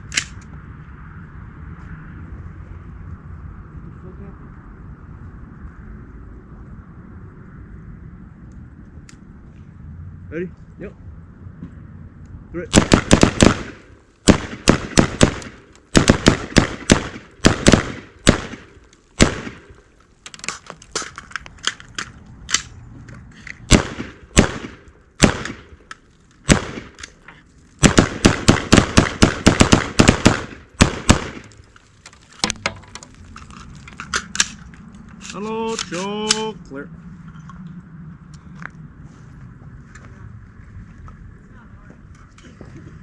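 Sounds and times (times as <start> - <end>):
rifles firing: 12.7 - 19.8, 23.7 - 25.7, 26.4 - 27.2, 27.8 - 31.6.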